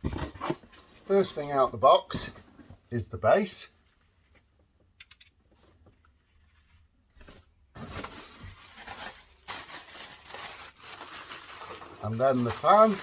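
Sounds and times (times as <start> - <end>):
packaging rustling and crinkling: 7.2 - 13.0.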